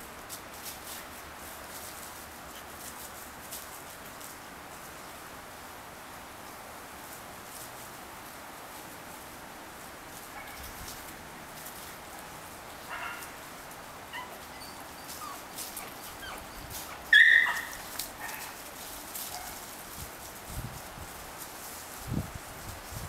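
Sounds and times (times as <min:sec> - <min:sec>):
puppies squeaking and whining: 0:14.1 - 0:17.9
puppy crying loudly: 0:14.1 - 0:17.9.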